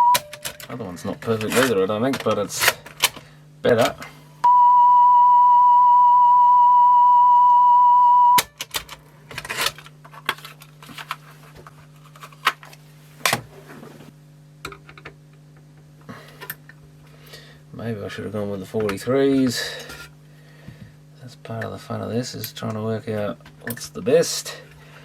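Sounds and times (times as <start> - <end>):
low steady hum: 0.0 - 25.0
steady test tone: 4.4 - 8.4.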